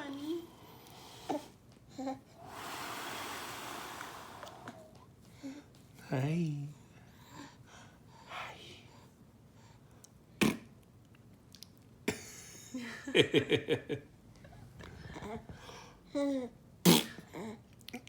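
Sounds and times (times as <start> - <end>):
sharp puffs of breath: 2.4 - 4.9.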